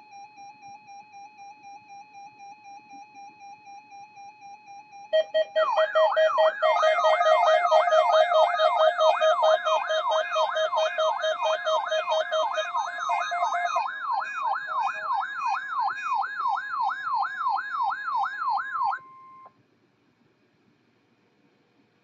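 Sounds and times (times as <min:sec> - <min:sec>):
warbling electronic alert siren: 0:00.8 - 0:19.5
pulsing beeps: 0:05.2 - 0:17.5.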